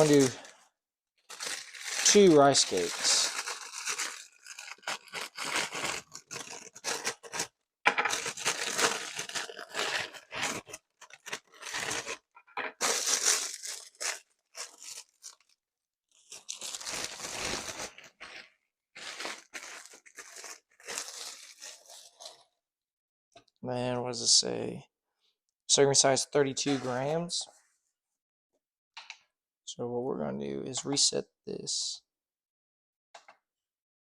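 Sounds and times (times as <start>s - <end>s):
crunchy rustles of rice cakes: 0.0s - 0.6s, 1.3s - 7.4s, 8.1s - 22.5s
plastic packaging crinkling and tearing: 0.0s - 0.6s, 1.2s - 22.5s.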